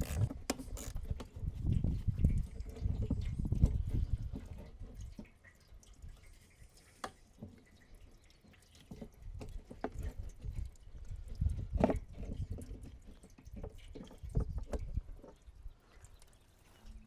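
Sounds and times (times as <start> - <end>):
wind rumble on microphone: 0.0 - 5.2, 9.2 - 15.8.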